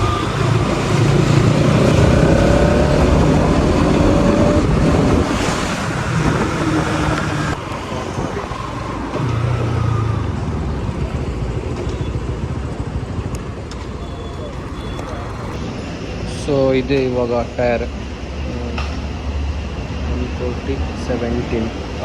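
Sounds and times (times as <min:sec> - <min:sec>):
motorcycle engine running: 0:00.0 - 0:15.6
road and wind noise: 0:00.0 - 0:22.0.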